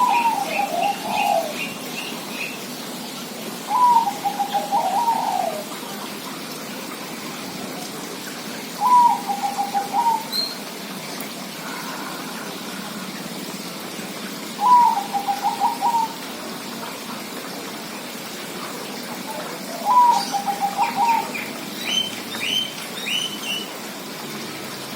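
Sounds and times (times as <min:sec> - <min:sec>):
dove cooing: 0:00.0 - 0:01.7, 0:03.7 - 0:05.7, 0:08.8 - 0:10.3, 0:14.6 - 0:16.2, 0:19.2 - 0:23.2.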